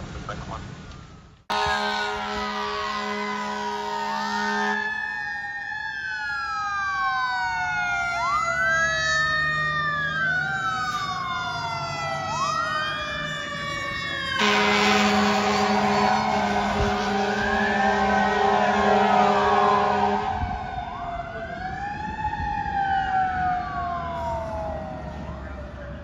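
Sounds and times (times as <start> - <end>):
fire engine siren wailing: 0.6 - 26.0
air horn blast: 1.5 - 5.0, 14.4 - 20.8.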